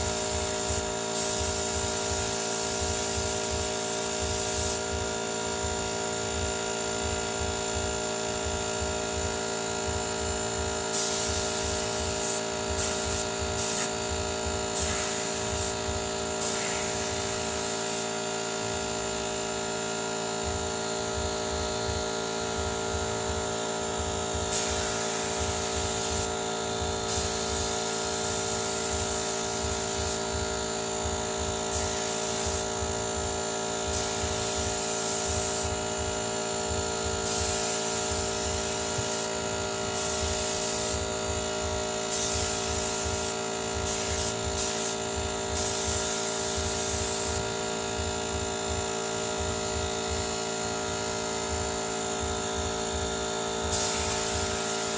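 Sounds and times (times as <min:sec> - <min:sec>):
bursts of air hiss: 0:00.0 - 0:04.8, 0:10.9 - 0:18.1, 0:24.5 - 0:26.3, 0:31.7 - 0:32.8, 0:37.2 - 0:41.0, 0:42.1 - 0:47.5, 0:53.7 - 0:54.9
air compressor running: 0:00.0 - 0:54.9.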